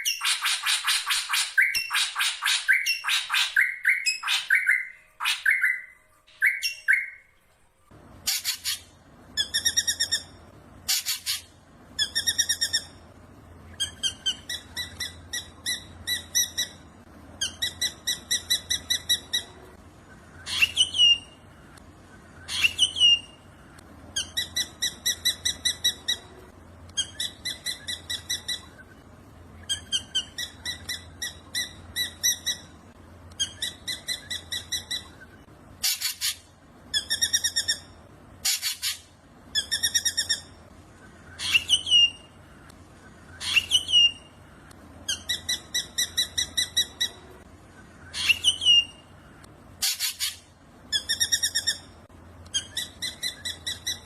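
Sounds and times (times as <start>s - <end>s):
bird singing metallic notes: 0.0s - 7.3s.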